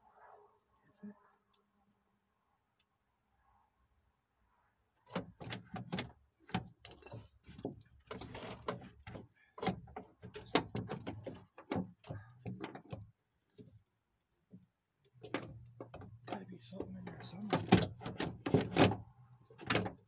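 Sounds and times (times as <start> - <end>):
door latch clicks and rattles: 15.2 - 19.0, 19.6 - 20.0.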